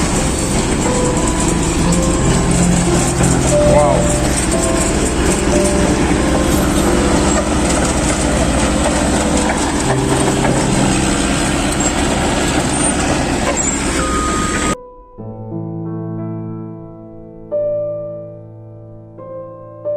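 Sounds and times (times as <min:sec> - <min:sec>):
road traffic noise: 0:00.0 - 0:14.8
vehicle engines running: 0:00.0 - 0:14.8
soft piano music: 0:00.0 - 0:19.9.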